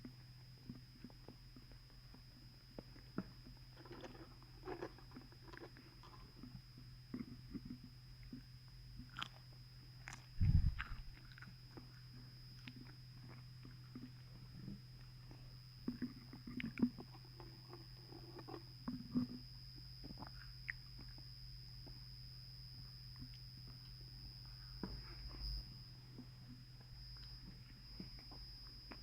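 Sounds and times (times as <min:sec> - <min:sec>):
person chewing food: 0:03.8 - 0:19.3.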